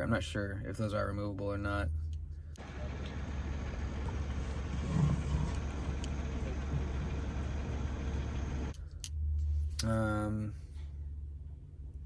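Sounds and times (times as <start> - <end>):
low engine hum: 0.7 - 12.0
rushing vehicle noise: 2.6 - 8.8.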